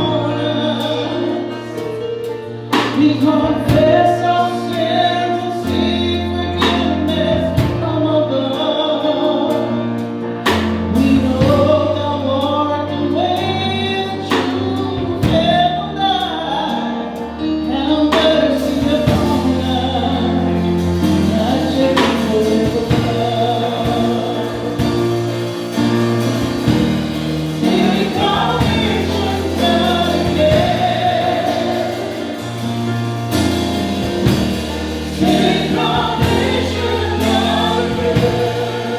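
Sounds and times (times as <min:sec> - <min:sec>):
choir singing a gospel hymn: 0:00.0 - 0:38.9
instrumental accompaniment: 0:00.0 - 0:38.9
drum hits: 0:20.8 - 0:38.9.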